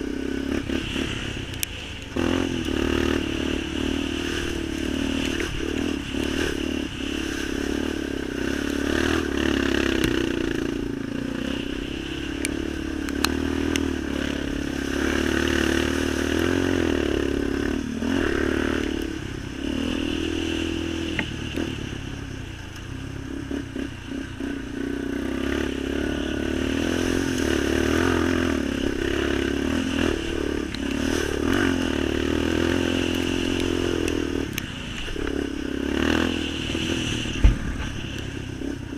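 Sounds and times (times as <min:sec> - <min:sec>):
off-road vehicle engine revving: 0:00.0 - 0:38.9
sharp ticks and knocks: 0:12.4 - 0:13.9.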